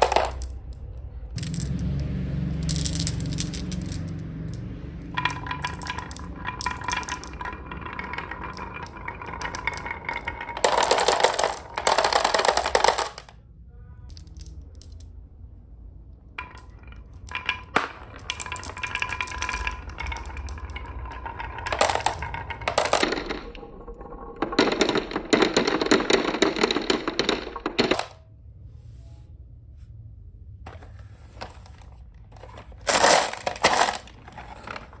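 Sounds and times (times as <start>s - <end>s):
marbles clattering down a marble run: 0.0s - 13.4s, 16.3s - 28.2s, 32.4s - 35.0s.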